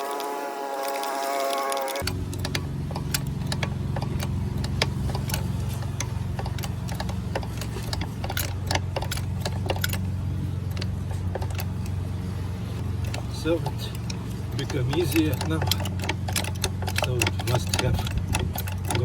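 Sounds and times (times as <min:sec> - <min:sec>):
metallic clicks and ticks: 0:00.0 - 0:19.0
steady low hum: 0:01.9 - 0:19.0.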